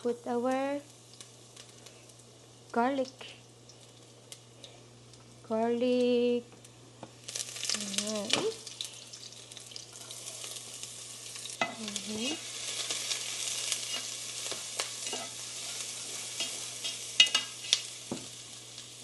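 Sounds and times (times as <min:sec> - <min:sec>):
garlic sizzling in oil: 0:00.0 - 0:19.0
utensil scraping a pan: 0:13.5 - 0:17.8.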